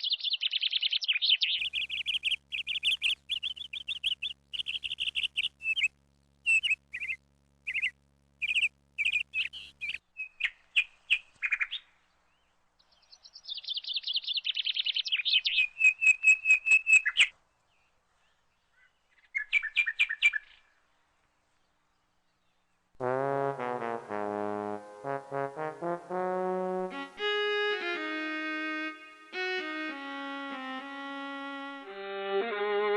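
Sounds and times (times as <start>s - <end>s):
small bird chirping and trilling: 0.0s - 11.9s, 12.8s - 17.3s, 18.6s - 20.7s.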